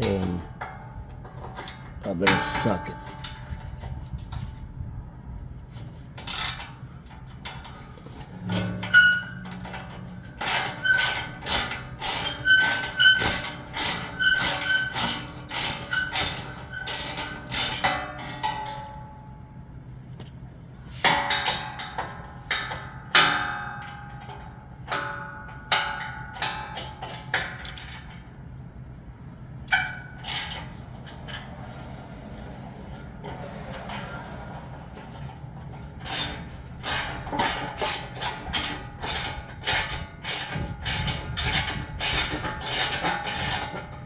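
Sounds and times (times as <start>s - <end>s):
metal clanks and rattles: 0.0s - 4.7s, 5.8s - 19.1s, 20.1s - 28.4s, 29.6s - 32.1s, 32.9s - 44.0s
ratchet clicking: 6.2s - 6.8s, 10.4s - 18.0s, 18.7s - 19.0s, 27.1s - 28.1s, 29.7s - 30.8s, 36.0s - 43.8s.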